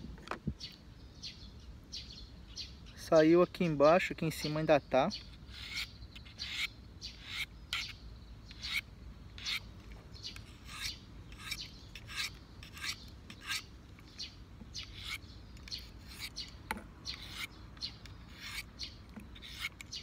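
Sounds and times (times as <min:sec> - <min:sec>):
knife rasping on sharpening stone: 0:10.3 - 0:13.7, 0:14.8 - 0:20.0.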